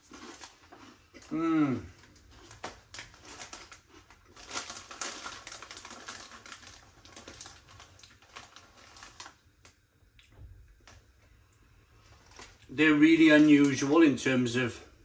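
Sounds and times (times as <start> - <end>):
crunchy snack chewing: 0.0 - 9.4.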